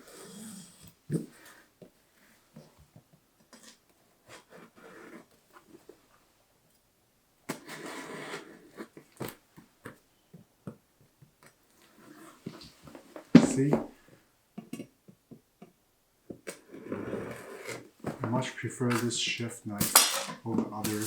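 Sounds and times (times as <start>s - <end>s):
scraping rustle: 17.0s - 21.0s.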